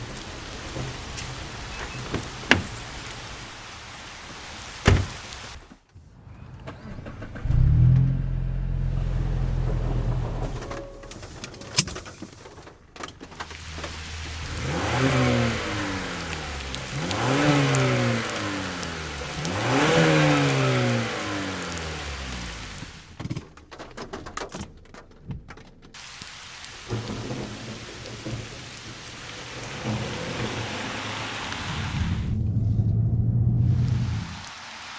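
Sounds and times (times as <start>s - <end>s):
rain falling: 0.0s - 5.9s, 7.1s - 34.9s
car engine starting and idling: 0.1s - 3.4s, 6.3s - 23.8s, 26.8s - 34.5s
sharp knocks: 2.1s - 2.9s, 4.8s - 5.2s
low rumble: 7.2s - 11.2s, 27.2s - 34.5s.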